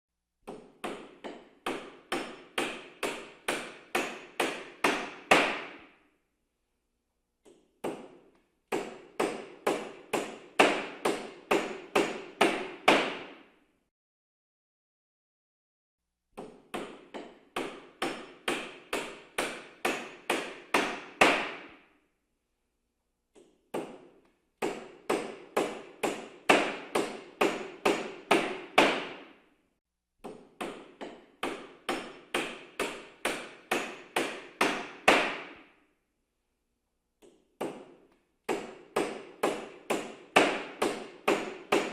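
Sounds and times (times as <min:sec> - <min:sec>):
hammer pounding: 0:00.4 - 0:06.0, 0:07.5 - 0:13.4, 0:16.4 - 0:21.8, 0:23.7 - 0:29.4, 0:30.2 - 0:35.6, 0:37.6 - 0:41.9.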